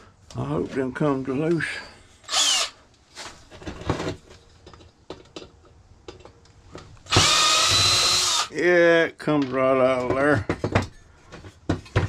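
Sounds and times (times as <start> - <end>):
power drill whining: 2.2 - 2.8, 7.1 - 8.5.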